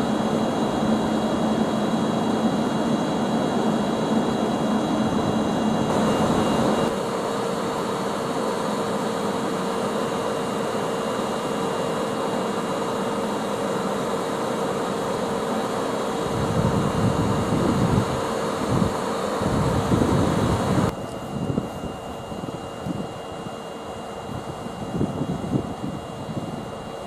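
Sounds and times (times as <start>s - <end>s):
locomotive engine running: 0.0s - 27.0s
steady hum tone: 0.0s - 27.0s
wind buffeting microphone: 16.3s - 23.3s, 24.2s - 26.9s.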